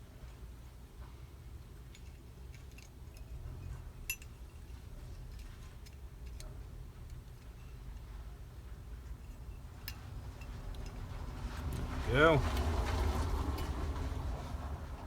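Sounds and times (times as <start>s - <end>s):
small metal parts clicking: 1.9s - 8.1s.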